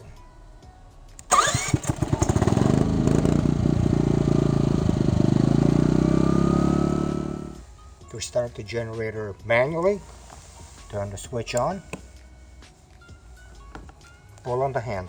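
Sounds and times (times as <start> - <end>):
generator engine running: 1.2 - 7.6.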